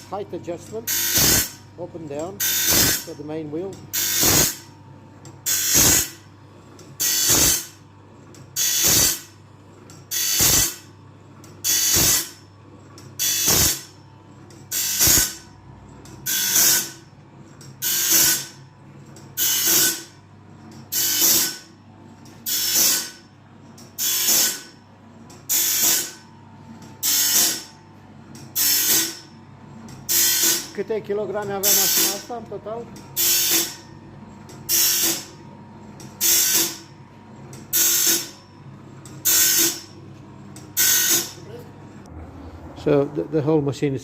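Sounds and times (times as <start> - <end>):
grinding wheel grinding bursts: 0.0 - 4.7, 5.4 - 7.9, 8.5 - 9.4, 11.6 - 12.4, 13.2 - 14.0, 14.6 - 17.1, 17.8 - 18.7, 19.3 - 20.2, 20.9 - 21.7, 22.4 - 23.3, 23.9 - 24.8, 25.4 - 26.3, 26.9 - 27.8, 28.5 - 35.4, 36.2 - 36.9, 37.6 - 38.4, 39.2 - 39.9, 40.7 - 42.8
steady motor hum: 0.0 - 44.0.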